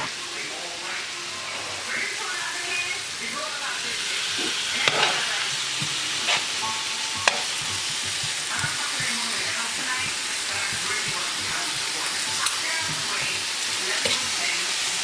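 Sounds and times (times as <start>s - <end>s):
meat and onions sizzling in a pan: 0.0s - 15.0s
utensil scraping a pan: 4.0s - 15.0s.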